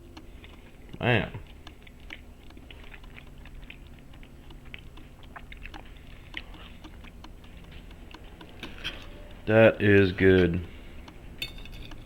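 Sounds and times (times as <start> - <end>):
low steady hum: 0.0 - 12.0
chewing crispy food: 0.3 - 9.1.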